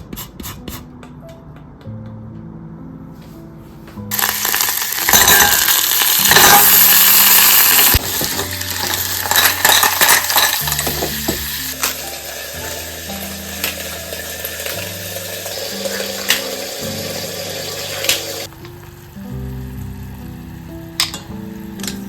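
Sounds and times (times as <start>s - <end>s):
utensil clinking: 4.1s - 7.2s, 8.2s - 12.0s
food sizzling in a frying pan: 4.1s - 22.0s.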